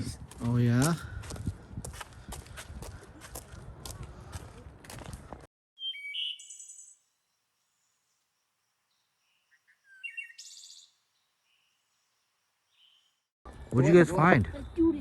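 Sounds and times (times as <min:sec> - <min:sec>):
footsteps and rustling: 0:00.0 - 0:05.5
songbirds calling: 0:05.2 - 0:15.0.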